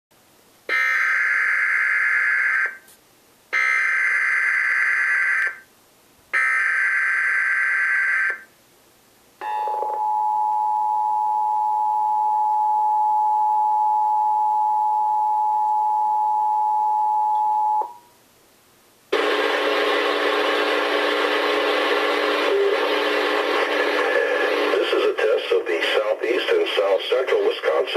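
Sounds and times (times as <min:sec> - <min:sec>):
two-tone attention signal: 0:09.4 - 0:18.0.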